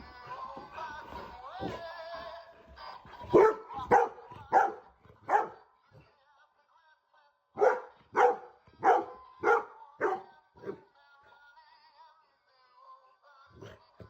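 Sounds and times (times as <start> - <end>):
dog barking: 3.2 - 5.6, 7.6 - 10.8.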